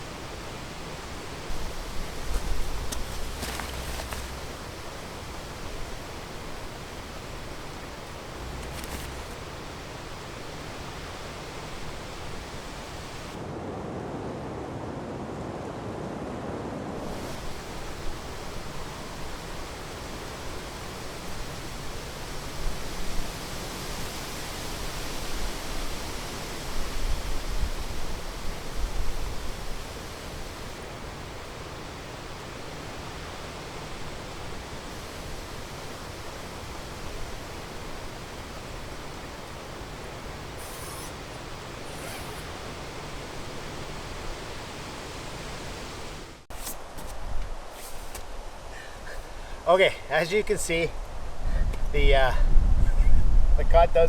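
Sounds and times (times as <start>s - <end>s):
wind buffeting microphone: 0.0s - 46.2s, 50.9s - 54.0s
strong wind rushing: 51.1s - 54.0s.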